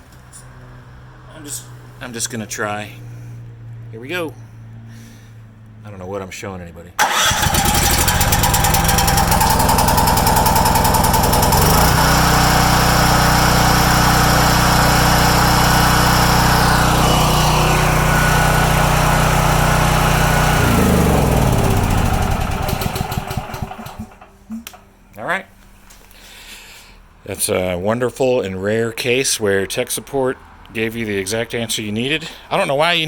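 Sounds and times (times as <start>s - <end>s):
generator engine running: 7.0s - 24.4s.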